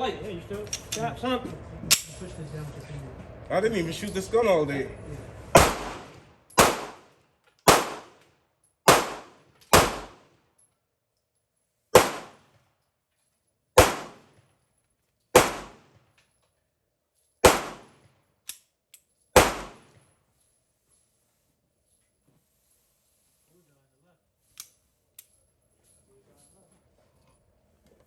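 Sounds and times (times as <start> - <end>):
pistol shots: 5.6 - 7.1, 7.7 - 8.2, 8.9 - 10.2, 12.0 - 12.4, 13.8 - 14.4, 15.4 - 16.0, 17.4 - 18.1, 19.4 - 20.0.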